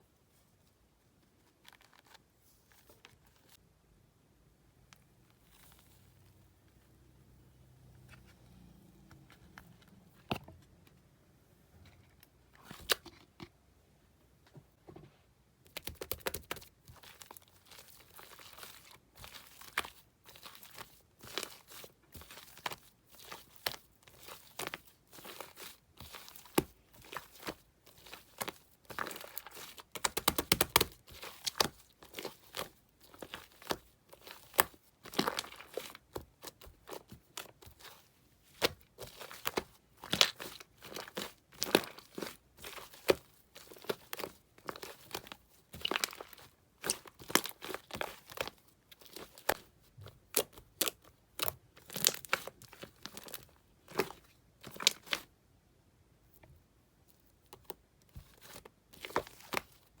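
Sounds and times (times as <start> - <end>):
slime squelching and popping: 15.7 - 55.3.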